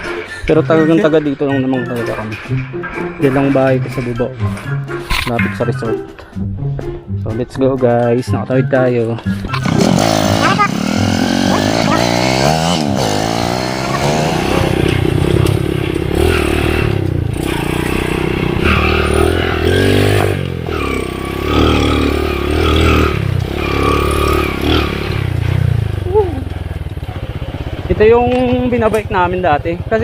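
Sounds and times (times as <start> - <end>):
motorcycle engine revving: 9.3 - 30.0.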